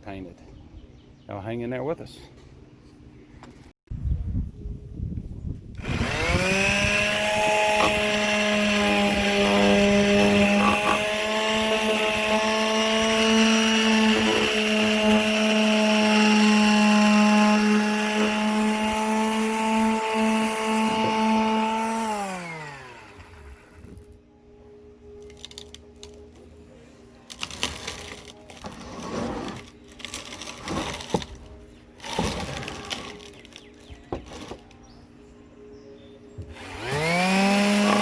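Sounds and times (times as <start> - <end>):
electric sander running: 5.8 - 24.0, 36.5 - 38.0.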